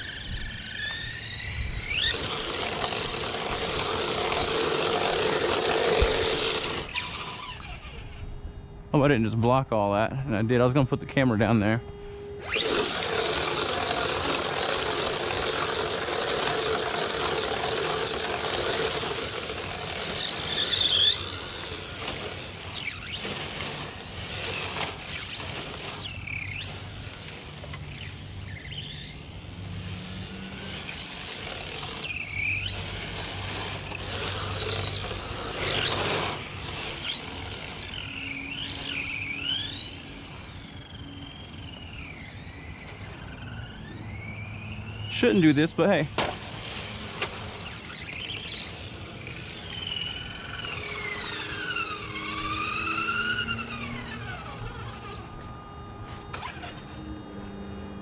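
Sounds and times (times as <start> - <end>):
high tyre squeals: 0.0 - 8.7, 11.9 - 57.5
rc car motor whine: 0.0 - 9.2, 9.9 - 58.0.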